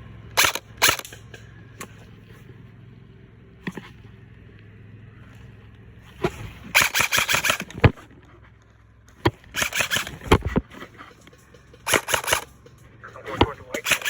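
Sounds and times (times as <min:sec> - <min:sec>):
airsoft gun full-auto bursts: 0:00.4 - 0:01.2, 0:06.7 - 0:07.9, 0:09.5 - 0:10.3, 0:11.8 - 0:12.6, 0:13.8 - 0:14.0.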